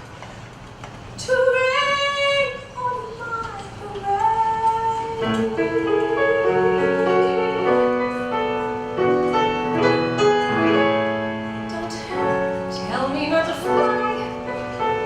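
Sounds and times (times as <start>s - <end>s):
woman singing with vibrato: 1.2s - 8.2s, 11.7s - 14.6s
piano playing chords: 4.8s - 15.0s.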